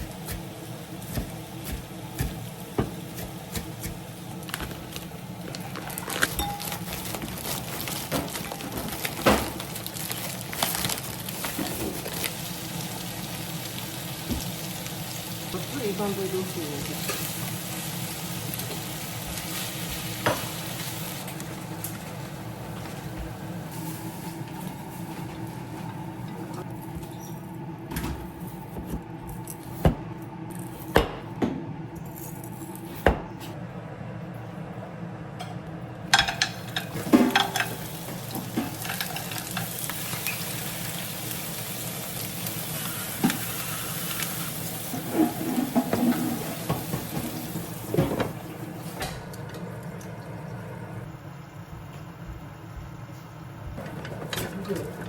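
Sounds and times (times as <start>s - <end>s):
food sizzling in a pan: 9.5s - 21.3s, 37.0s - 48.2s
utensils knocking on pots: 36.1s - 37.8s.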